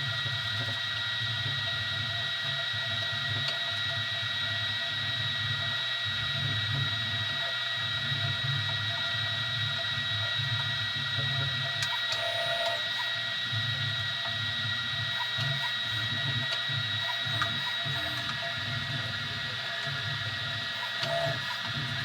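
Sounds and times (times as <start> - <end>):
steady high-pitched whine: 0.0 - 22.0
stepper motors buzzing: 11.8 - 22.0.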